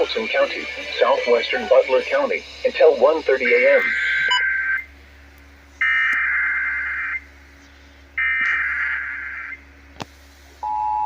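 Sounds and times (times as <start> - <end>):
buzzy digital tone bursts: 0.0 - 4.9
two-tone attention signal: 3.5 - 4.9.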